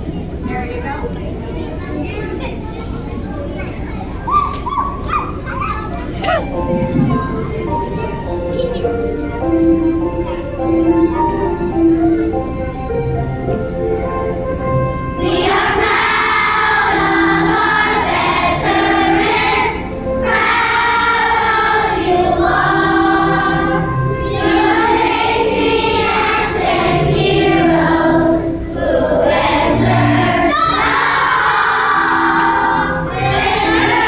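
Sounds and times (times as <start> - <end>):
children's choir singing: 4.1 - 34.0
instrumental accompaniment: 6.0 - 34.0.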